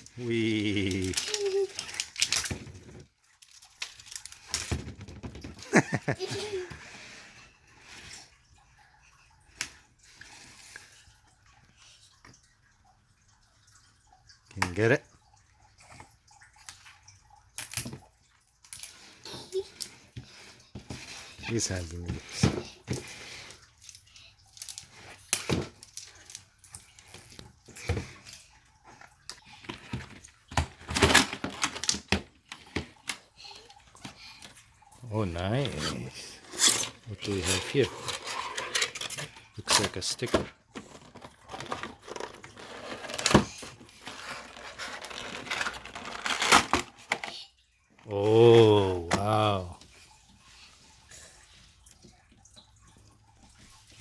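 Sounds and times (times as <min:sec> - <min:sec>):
plastic and paper packaging crinkling: 0:00.0 - 0:05.1, 0:35.0 - 0:47.2
short vocal sound: 0:00.2 - 0:01.6.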